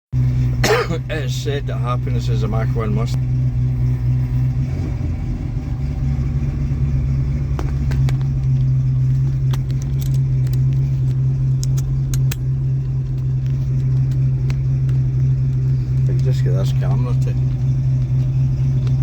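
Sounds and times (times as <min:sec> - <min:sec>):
car engine rumbling: 0:00.1 - 0:19.0
light clicks and rattles: 0:07.6 - 0:16.4.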